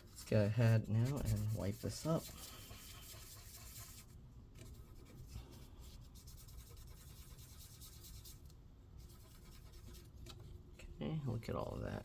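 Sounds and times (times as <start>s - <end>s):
paper towel rubbing: 0.0s - 4.1s.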